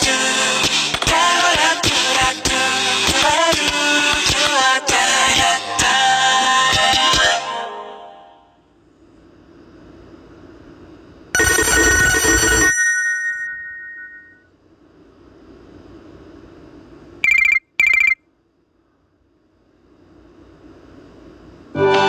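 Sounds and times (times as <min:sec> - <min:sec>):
chord-like ringtone hit: 0:11.4 - 0:14.4
short high beeps: 0:11.4 - 0:14.4, 0:17.2 - 0:18.2.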